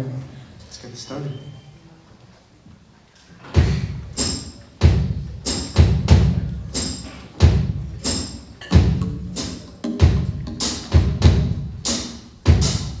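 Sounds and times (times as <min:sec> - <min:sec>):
bass drum and cymbal hits: 0:03.6 - 0:13.0
live band playing: 0:03.6 - 0:13.0.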